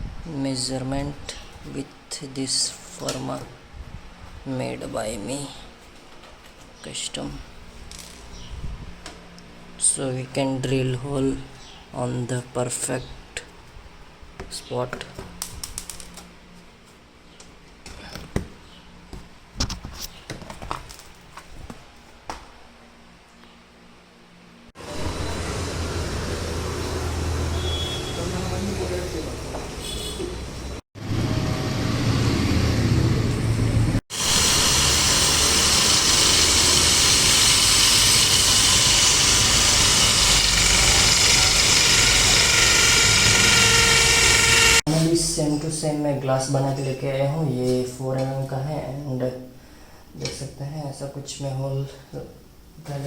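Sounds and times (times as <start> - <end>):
power tool motor whining: 34.1 - 44.8.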